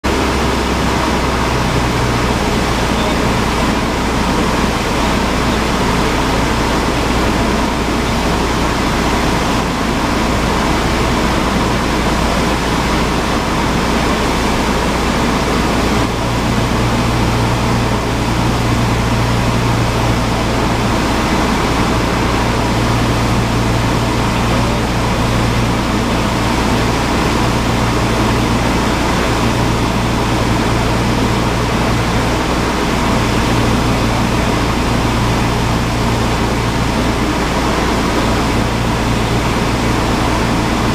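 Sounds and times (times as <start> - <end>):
airplane engine droning in cabin: 0.0 - 40.9.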